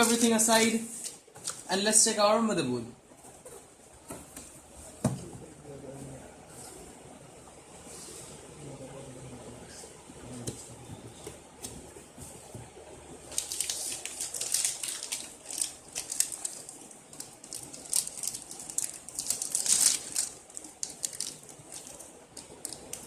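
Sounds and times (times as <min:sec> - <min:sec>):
packaging rustling and crinkling: 0:00.0 - 0:01.7, 0:13.2 - 0:23.0.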